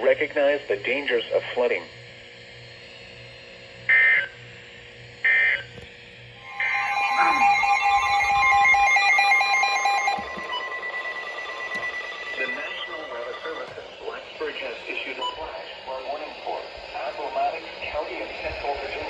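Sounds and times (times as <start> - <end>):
two-tone attention signal: 6.4 - 14.4
shrill digital data bursts: 6.4 - 18.8.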